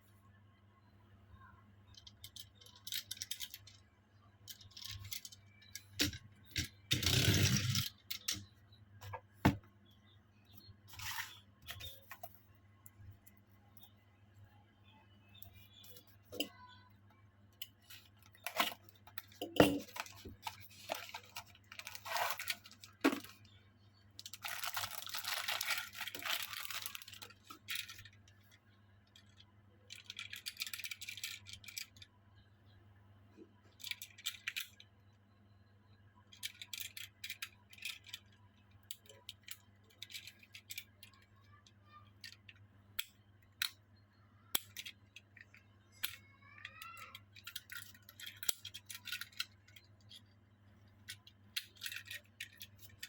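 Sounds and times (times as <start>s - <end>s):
packaging rustling and tearing: 19.8s - 23.4s, 24.2s - 27.9s.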